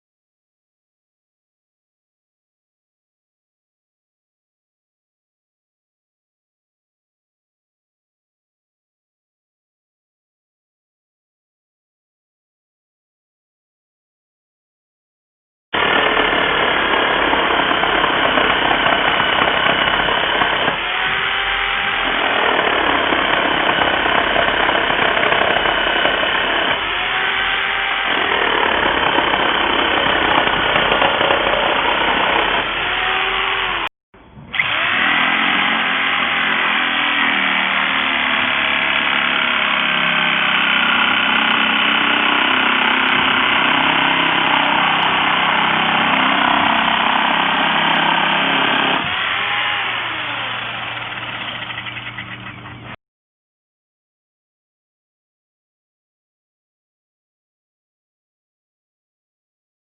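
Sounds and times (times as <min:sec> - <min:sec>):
reciprocating saw running: 0:15.8 - 0:52.9.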